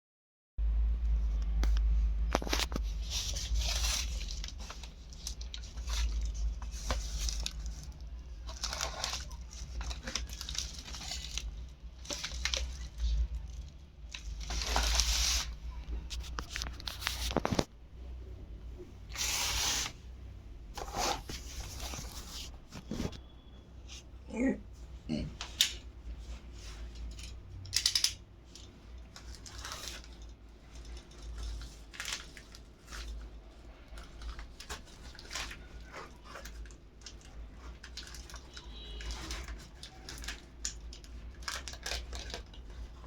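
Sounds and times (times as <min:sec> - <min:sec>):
low steady hum: 0:00.6 - 0:43.0
packaging tearing and crinkling: 0:02.3 - 0:17.7, 0:29.1 - 0:43.0.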